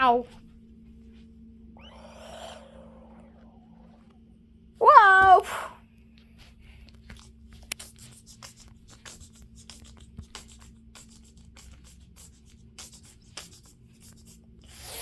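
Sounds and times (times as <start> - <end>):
low steady hum: 0.0 - 15.0
rapid scratching and rubbing: 6.4 - 15.0.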